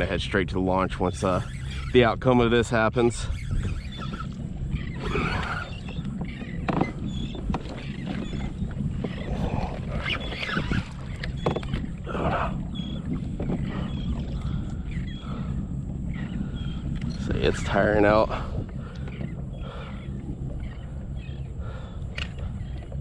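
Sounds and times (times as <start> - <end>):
wind rumble on microphone: 0.0 - 23.0
water splashing against kayak hull: 3.6 - 23.0.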